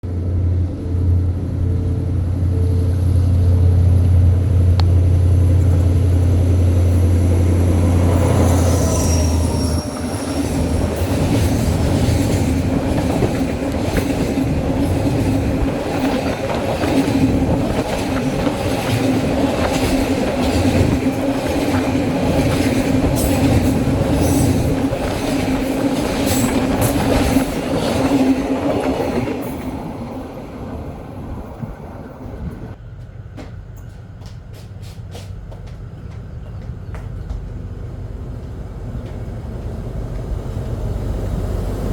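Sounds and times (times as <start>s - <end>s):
diesel train engine drone: 0.0s - 41.9s
high wheel squeal: 8.0s - 11.6s
wheels clicking over rail joints: 10.0s - 29.8s.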